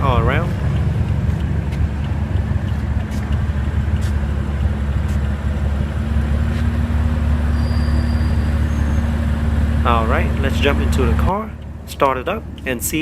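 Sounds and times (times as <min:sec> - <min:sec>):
vehicle engine idling: 0:00.0 - 0:13.0.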